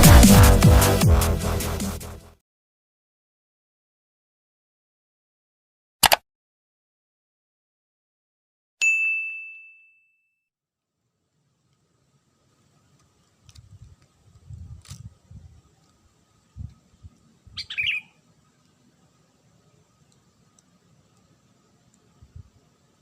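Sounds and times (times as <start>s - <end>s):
bell ding: 8.8s - 10.5s
bird chirp: 17.5s - 18.2s.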